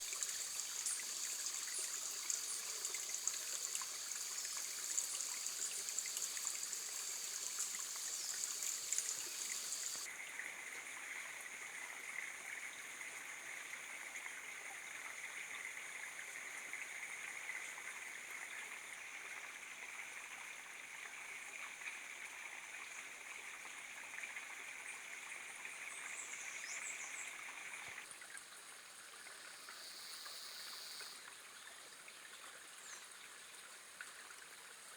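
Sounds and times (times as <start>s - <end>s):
steady high hiss: 0.1s - 10.1s.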